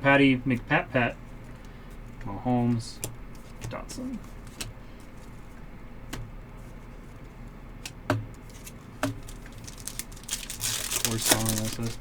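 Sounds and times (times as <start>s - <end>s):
steady low hum: 0.0s - 12.0s
trading cards clicking and tapping: 7.8s - 10.3s.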